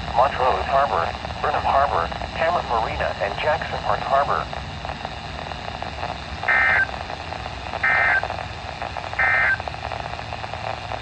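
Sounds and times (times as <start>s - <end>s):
steady background hiss: 0.0s - 11.0s
warbling digital data tones: 9.2s - 9.7s.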